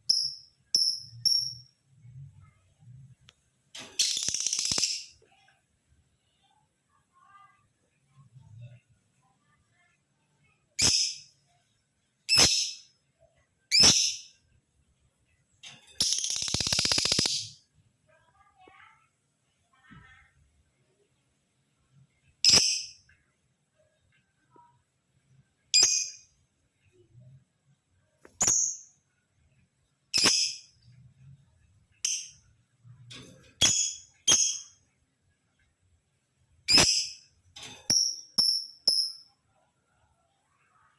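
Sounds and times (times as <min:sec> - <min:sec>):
lovebird rattling chatter: 0:04.0 - 0:05.0, 0:15.9 - 0:17.5.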